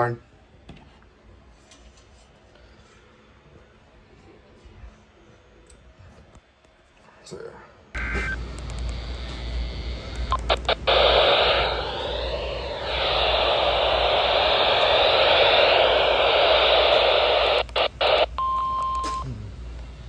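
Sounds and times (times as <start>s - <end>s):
radio static hiss: 8.0s - 20.0s.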